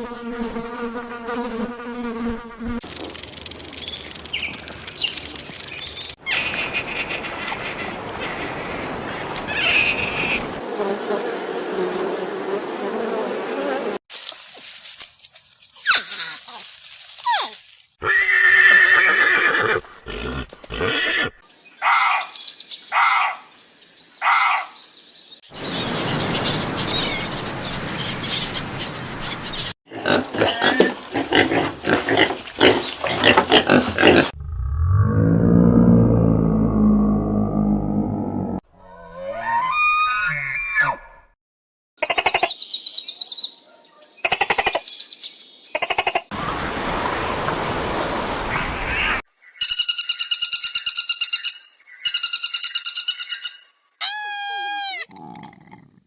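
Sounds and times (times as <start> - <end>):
sustained multi-pitch tone: 34.4 - 38.6.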